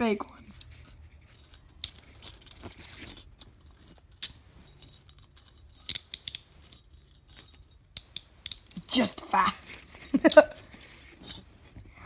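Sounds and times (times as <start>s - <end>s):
metal handcuff chain jangling: 0.0s - 11.6s
sharp metal clicks: 5.1s - 9.0s.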